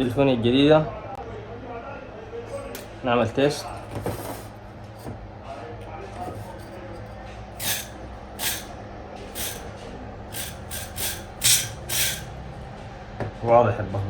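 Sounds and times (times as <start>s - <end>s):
fuel spray hissing bursts: 7.6s - 8.8s, 9.4s - 9.7s, 10.3s - 12.4s.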